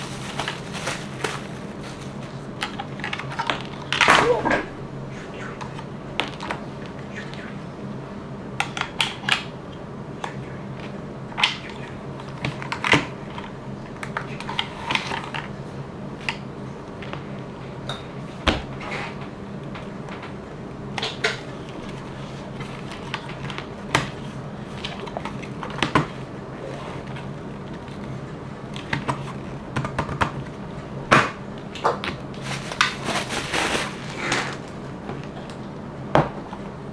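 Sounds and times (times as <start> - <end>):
packaging clicks and rustles: 0.0 - 4.1, 32.3 - 34.9
steady low hum: 0.0 - 36.9.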